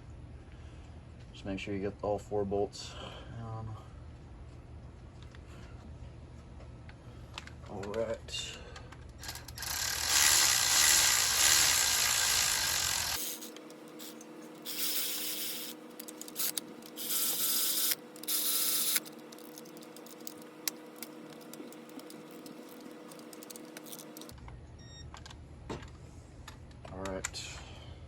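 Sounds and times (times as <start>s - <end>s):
power tool running: 9.2s - 24.3s.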